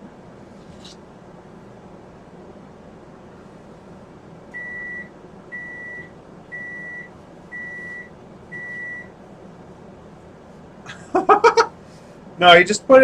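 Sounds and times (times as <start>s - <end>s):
microwave oven beeping: 4.4s - 9.3s.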